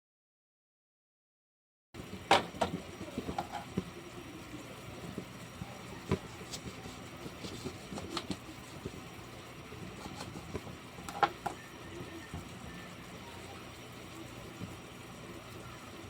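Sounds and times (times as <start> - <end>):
kitchen knocks and clicks: 2.3 - 3.9, 10.0 - 11.6.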